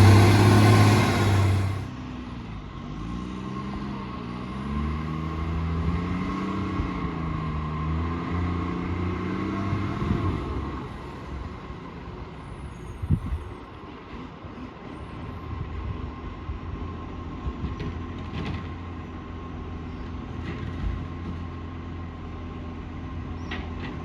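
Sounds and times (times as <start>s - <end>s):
garbage truck engine revving: 0.0s - 1.9s.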